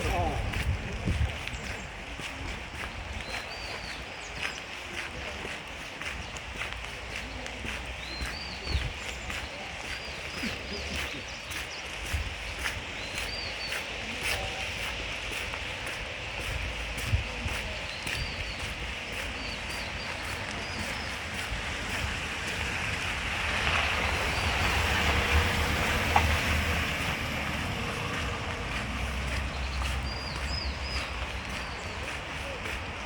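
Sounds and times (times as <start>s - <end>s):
wind rumble on microphone: 0.0s - 33.0s
outdoor rushing noise: 19.3s - 33.0s.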